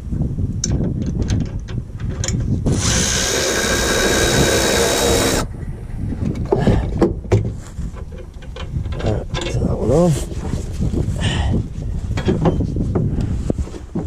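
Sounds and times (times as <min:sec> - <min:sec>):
handheld power tool running: 0:02.7 - 0:05.5
metal tools clicking and knocking: 0:08.0 - 0:09.7.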